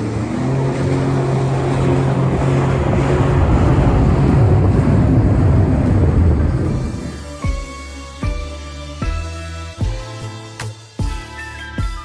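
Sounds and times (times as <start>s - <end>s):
wind on microphone: 0.0s - 7.4s
water noise: 0.0s - 8.0s
jet ski engine: 0.0s - 9.1s.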